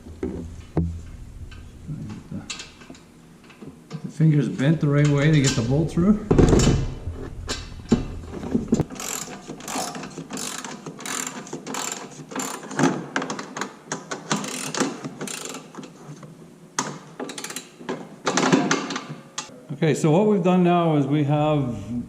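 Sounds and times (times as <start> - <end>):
ratchet wrench clicking: 8.9 - 12.7, 14.4 - 15.7, 17.3 - 17.7.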